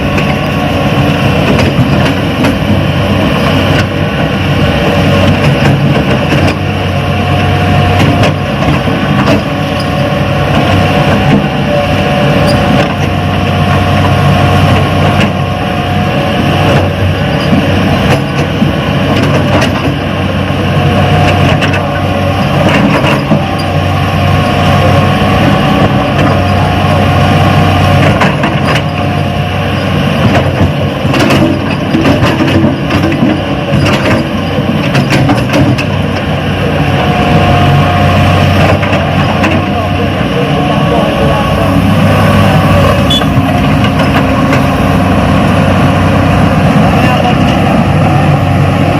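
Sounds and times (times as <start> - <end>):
model excavator engine drone: 0.0 - 48.9
high motor whine: 32.7 - 48.9.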